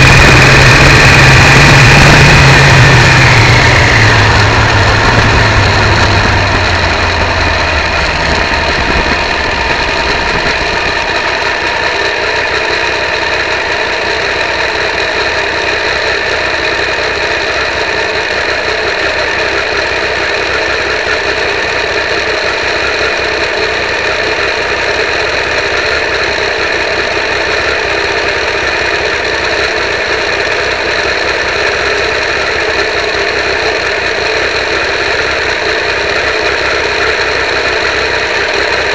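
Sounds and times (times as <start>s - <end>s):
wind and road noise: 0.0s - 13.8s
motorcycle engine running: 0.0s - 38.9s.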